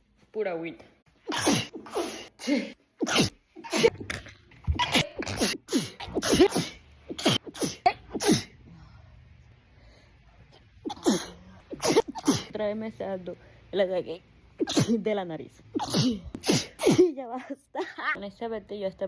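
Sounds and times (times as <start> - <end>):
woman sneezing: 1.3 - 4.0, 4.7 - 8.6, 10.8 - 12.6, 14.6 - 15.0, 15.7 - 17.2.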